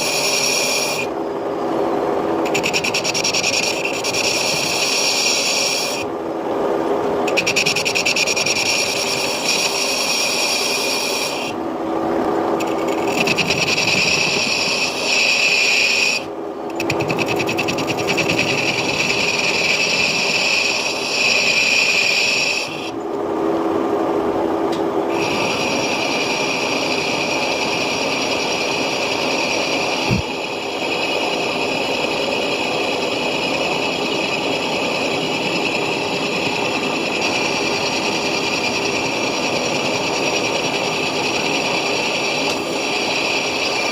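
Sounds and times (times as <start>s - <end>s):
lathe tool scraping iron: 0.0s - 1.1s, 2.4s - 6.1s, 7.3s - 11.6s, 12.6s - 22.9s, 25.1s - 43.9s.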